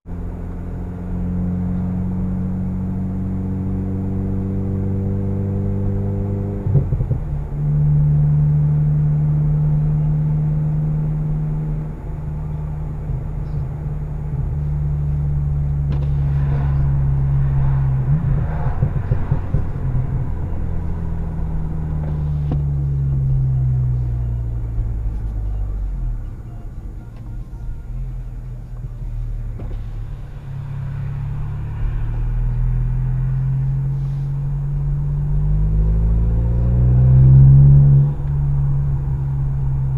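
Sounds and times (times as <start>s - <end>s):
car engine exhaust drone: 0.0s - 39.9s.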